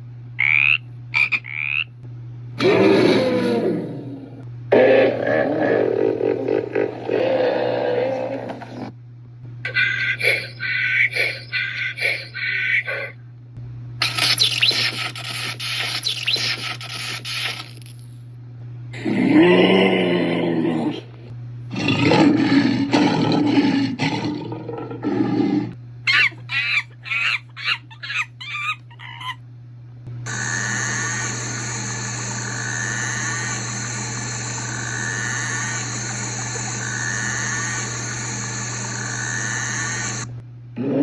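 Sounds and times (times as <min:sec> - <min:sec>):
short quick chirps: 0:14.0 - 0:17.8
wavering animal call: 0:30.3 - 0:40.3.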